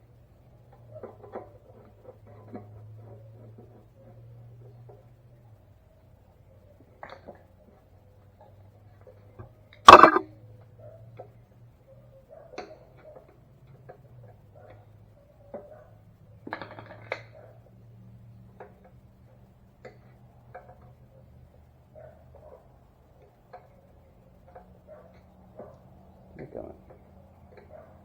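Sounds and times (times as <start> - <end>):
loud sharp knock: 9.9 - 10.2.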